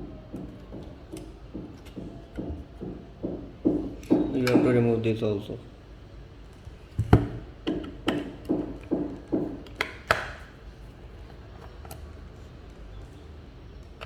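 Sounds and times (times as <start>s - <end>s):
screwdriver taps and clicks: 0.3s - 4.8s, 7.0s - 10.5s.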